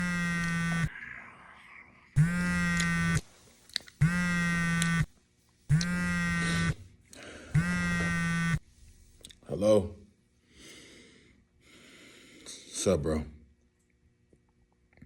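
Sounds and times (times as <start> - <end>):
phone vibrating on hard surface: 0.0 - 0.9, 2.2 - 3.3, 4.0 - 5.1, 5.7 - 6.9, 7.6 - 8.7.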